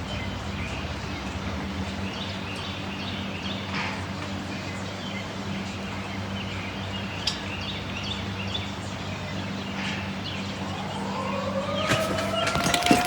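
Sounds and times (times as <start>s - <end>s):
small birds chirping: 0.0s - 13.0s
warning siren winding up: 10.5s - 13.0s.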